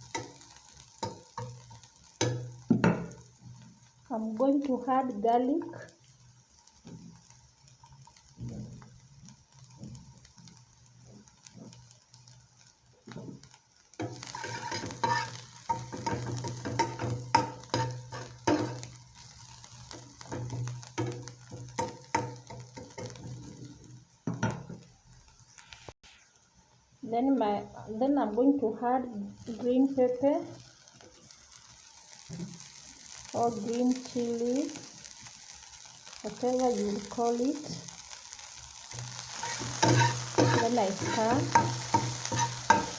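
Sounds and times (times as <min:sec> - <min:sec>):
utensil stirring and scraping pan: 0:00.0 - 0:03.9, 0:13.1 - 0:24.8, 0:38.9 - 0:42.9
onions frying in oil: 0:00.0 - 0:42.9.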